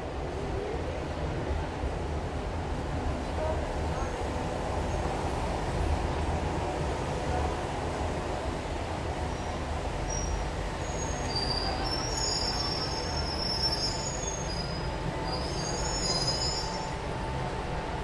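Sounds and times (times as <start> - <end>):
train rumble: 0.0 - 18.0
train wheels squealing on rails: 4.8 - 5.2, 9.3 - 17.4.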